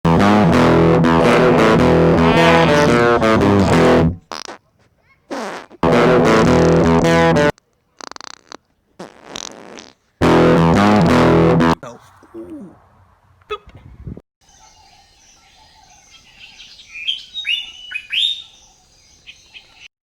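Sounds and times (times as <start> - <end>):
distorted electric guitar music: 0.0 - 4.3, 5.8 - 7.6, 10.2 - 11.8
short buzzing: 0.4 - 4.6.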